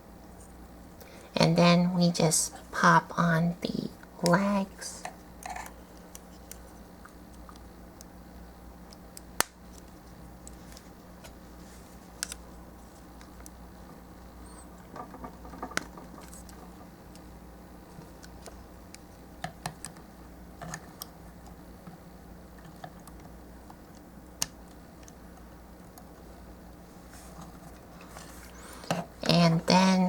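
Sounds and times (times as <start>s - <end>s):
steady low hum: 0.0s - 30.0s
plastic parts clicking and snapping: 20.6s - 21.1s.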